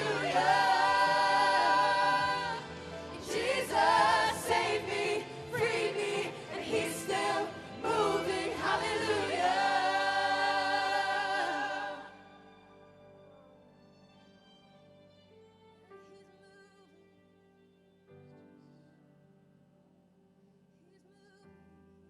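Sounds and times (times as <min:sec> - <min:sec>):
group singing gospel worship: 0:00.0 - 0:12.2.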